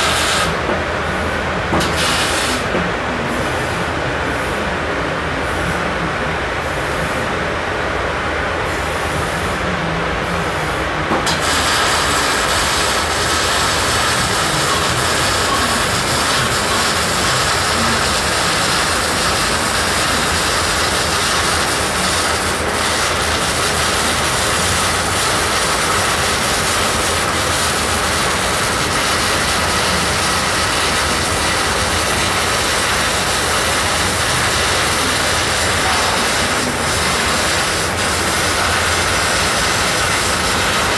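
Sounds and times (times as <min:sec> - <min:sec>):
arc welding hiss: 0:00.0 - 0:00.6, 0:01.8 - 0:02.7, 0:11.2 - 0:40.9.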